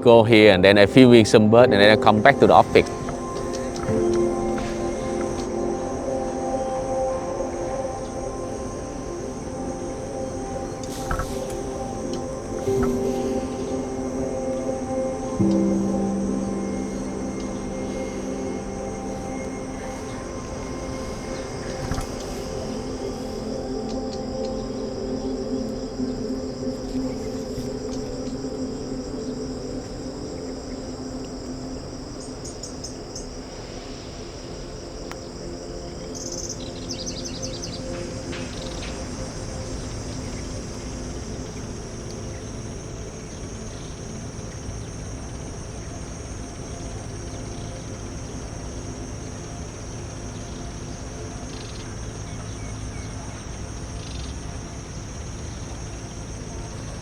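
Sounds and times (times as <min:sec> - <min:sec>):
insect chorus: 0:00.0 - 0:57.0.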